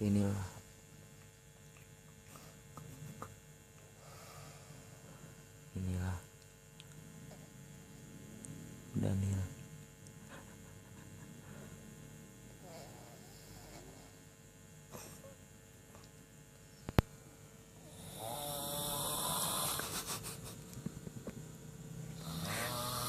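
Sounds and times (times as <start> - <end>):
steady hum: 0.0 - 23.0
person snoring: 12.6 - 14.2, 17.8 - 20.2, 22.1 - 23.0.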